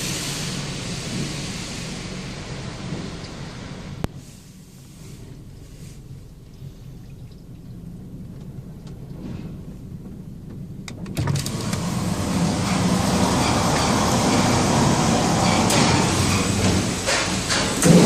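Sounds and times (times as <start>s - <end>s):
car wash machinery rushing: 0.0s - 8.2s, 11.1s - 18.0s
low steady hum: 1.8s - 13.2s.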